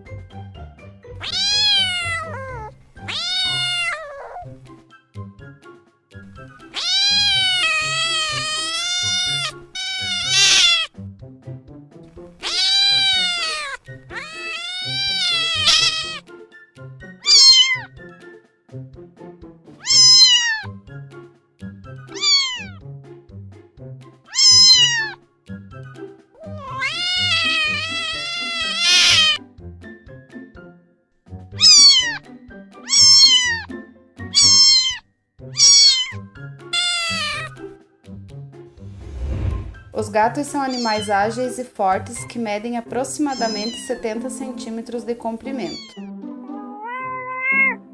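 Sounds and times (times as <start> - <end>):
soft background music: 0.0 - 47.9
cat meowing: 1.2 - 4.5, 6.6 - 10.9, 12.4 - 16.2, 17.2 - 17.9, 19.8 - 20.8, 22.1 - 22.8, 24.3 - 25.2, 26.4 - 29.4, 31.6 - 33.7, 34.3 - 37.6, 40.6 - 41.2, 43.3 - 44.0, 45.5 - 47.8.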